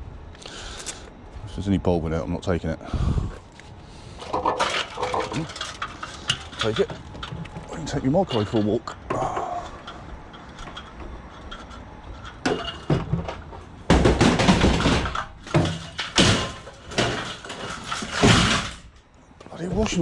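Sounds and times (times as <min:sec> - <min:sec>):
heavy thuds and metallic clattering: 0:04.1 - 0:20.0.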